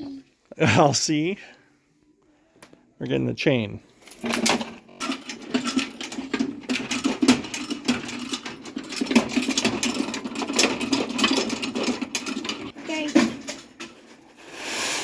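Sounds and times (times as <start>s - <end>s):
metal rattling and clicking: 4.0s - 14.3s.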